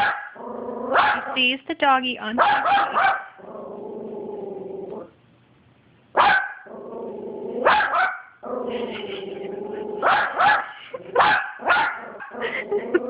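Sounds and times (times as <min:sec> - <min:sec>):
small dog barking: 0:00.0 - 0:01.4, 0:02.4 - 0:03.4, 0:06.2 - 0:06.7, 0:07.6 - 0:08.4, 0:10.0 - 0:12.3
dog growling: 0:00.4 - 0:01.3, 0:03.4 - 0:05.1, 0:06.7 - 0:07.7, 0:08.4 - 0:10.1, 0:11.9 - 0:13.0.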